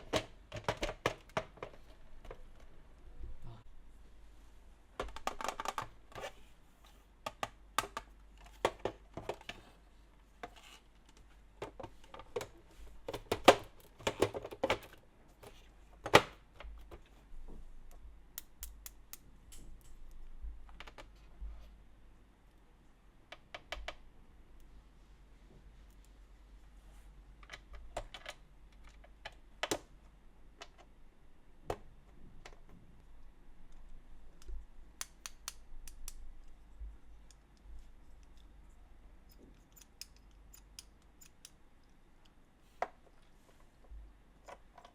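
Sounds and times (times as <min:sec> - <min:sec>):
plastic toy pieces clicking: 0:18.4 - 0:19.2.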